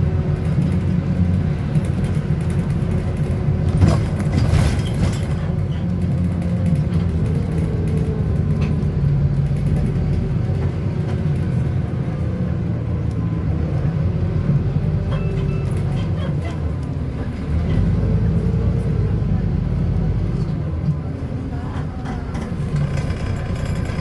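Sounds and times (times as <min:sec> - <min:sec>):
bus engine rumbling: 0:00.0 - 0:24.0
interior rattles and clicks: 0:00.1 - 0:12.2.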